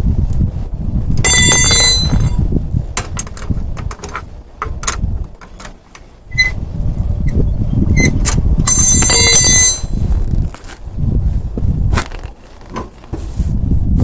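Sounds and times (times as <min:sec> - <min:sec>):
low rumble: 0:00.0 - 0:05.4, 0:06.1 - 0:12.0
metal parts clinking: 0:01.2 - 0:02.4, 0:03.0 - 0:06.6, 0:08.2 - 0:10.0.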